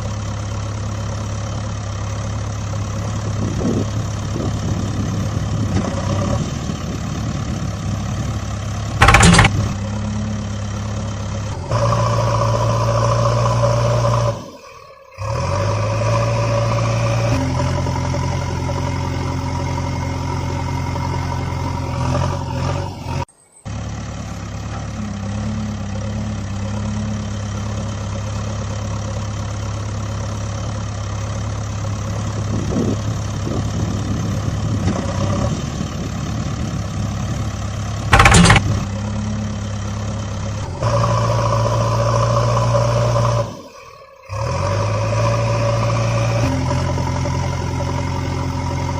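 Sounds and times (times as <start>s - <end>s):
engine idling: 0.0s - 48.9s
sharp loud knock: 9.0s - 9.6s, 38.2s - 38.7s.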